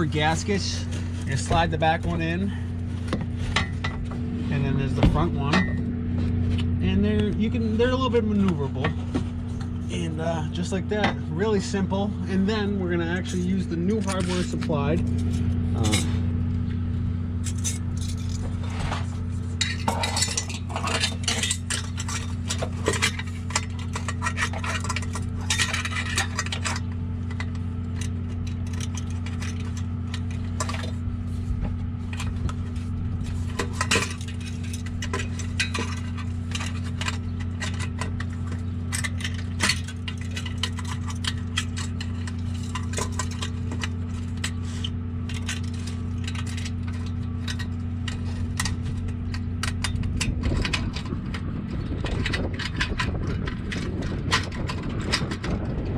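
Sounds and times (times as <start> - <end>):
steady low hum: 0.0 - 55.9
metal clamp hardware clinking: 33.4 - 55.6.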